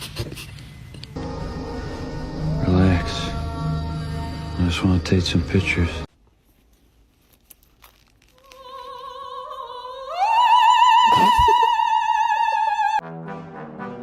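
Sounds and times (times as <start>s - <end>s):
operatic singing voice: 1.2s - 6.1s, 8.5s - 13.0s.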